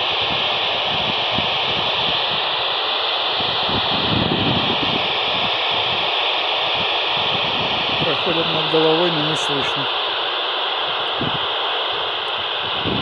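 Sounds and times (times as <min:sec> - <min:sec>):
radio static hiss: 0:07.8 - 0:12.4.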